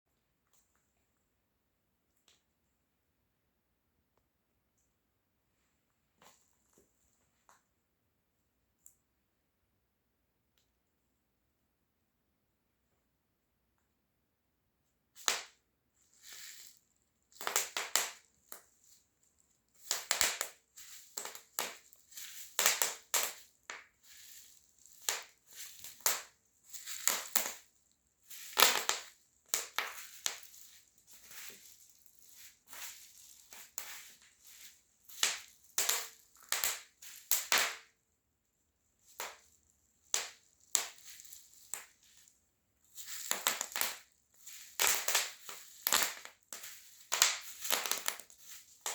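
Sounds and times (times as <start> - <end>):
bubble wrap popping underfoot: 15.2 - 38.1, 39.0 - 48.9.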